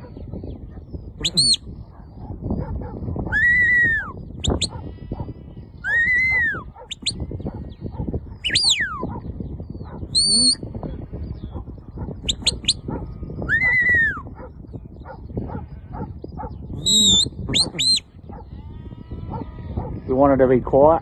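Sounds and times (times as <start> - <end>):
shepherd's whistle: 1.2 - 1.6, 3.3 - 4.8, 5.8 - 7.2, 8.4 - 9.1, 10.1 - 10.6, 12.2 - 12.8, 13.5 - 14.3, 16.8 - 18.0
short quick whistle pips: 10.2 - 10.6.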